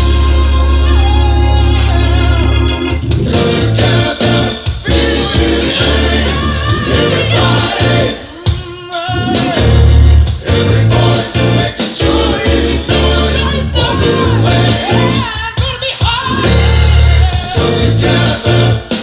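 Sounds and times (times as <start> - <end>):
heavy bass line: 0.0 - 8.2, 9.2 - 15.3, 16.3 - 19.0
music with singing: 0.0 - 19.0
organ-like keyboard: 0.0 - 19.0.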